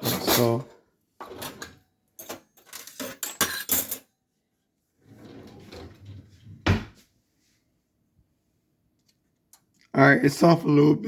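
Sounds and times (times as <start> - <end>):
metal cutlery clattering: 0.0 - 0.6, 1.2 - 4.1
rustling in drawer: 0.0 - 1.8, 5.0 - 6.8.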